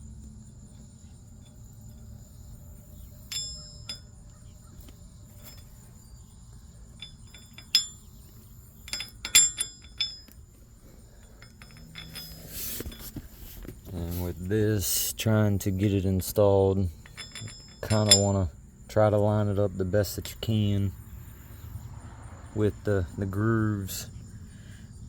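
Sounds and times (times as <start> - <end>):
insects chirring: 0.0 - 25.0
steel parts clinking: 1.3 - 20.6.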